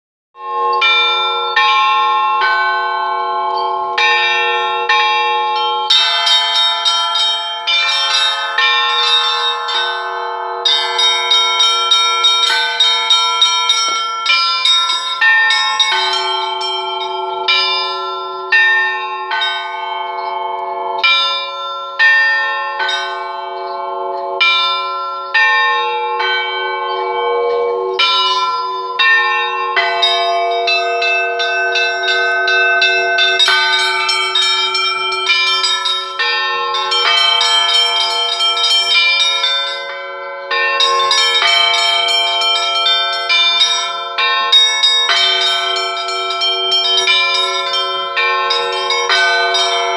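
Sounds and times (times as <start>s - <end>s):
small high bells chiming: 0.4s - 49.9s
deep bell strokes: 29.8s - 39.9s, 40.5s - 49.9s.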